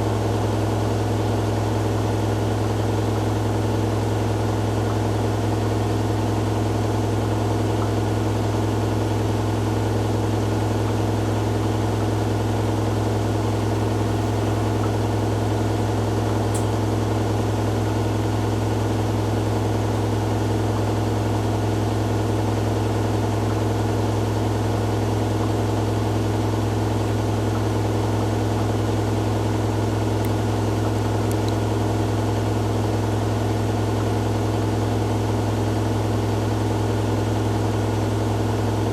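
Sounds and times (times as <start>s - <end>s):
washing machine spinning: 0.0s - 38.9s.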